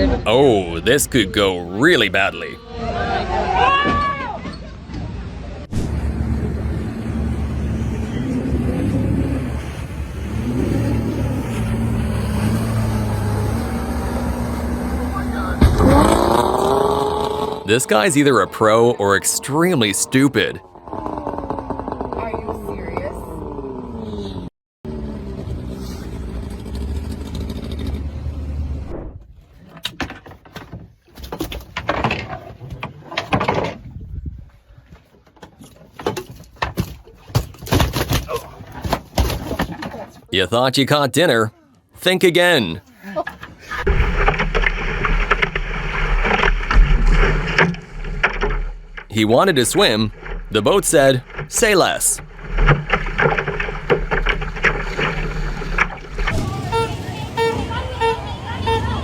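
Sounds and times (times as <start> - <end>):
boat engine running: 54.9 - 59.0.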